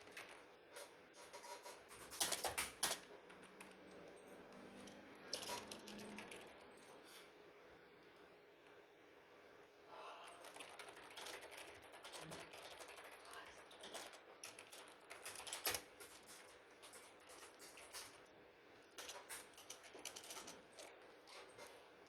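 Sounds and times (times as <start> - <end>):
small clicks and rustling: 10.4 - 18.3, 18.9 - 21.8.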